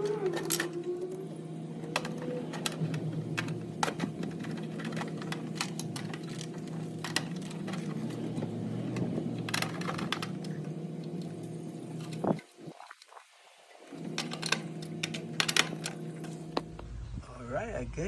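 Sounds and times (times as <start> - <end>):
low machine hum: 0.0 - 12.7.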